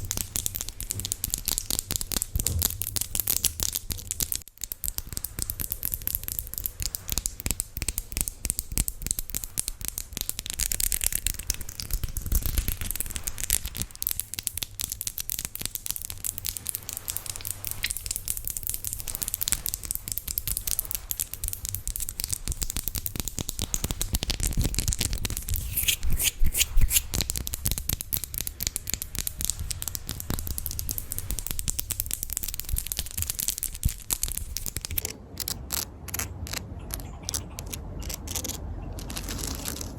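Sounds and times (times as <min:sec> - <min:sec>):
fingernails scratching a surface: 0:25.6 - 0:27.3, 0:33.6 - 0:39.9.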